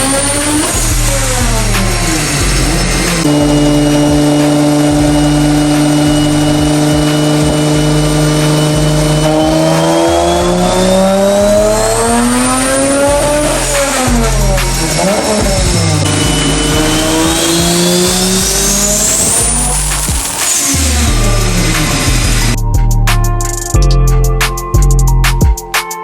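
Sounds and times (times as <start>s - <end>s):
car engine revving: 0.0s - 22.6s
high turbo whine: 0.0s - 22.7s.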